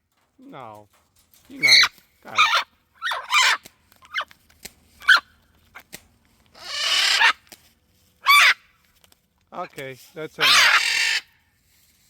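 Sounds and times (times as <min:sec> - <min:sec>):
parrot harsh screech: 0:01.6 - 0:03.6, 0:06.6 - 0:07.4, 0:08.2 - 0:08.6, 0:10.4 - 0:11.3
parrots squawking: 0:01.6 - 0:04.2, 0:06.6 - 0:07.4, 0:08.2 - 0:08.6, 0:10.4 - 0:11.3.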